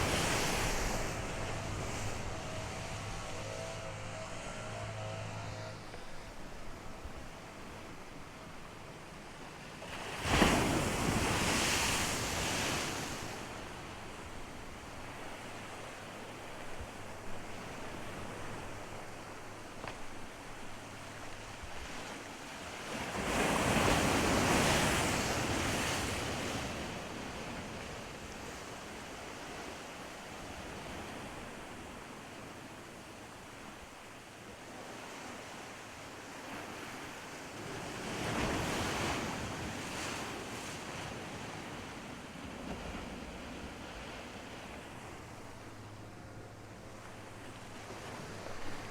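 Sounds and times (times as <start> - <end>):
rush of water: 0.0 - 4.1
waves breaking on a beach: 0.0 - 48.9.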